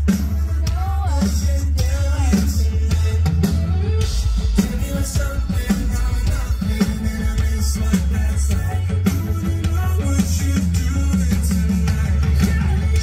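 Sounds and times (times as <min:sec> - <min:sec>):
constant bass: 0:00.0 - 0:13.0
live band music: 0:00.0 - 0:13.0
steady drum beat: 0:00.0 - 0:13.0.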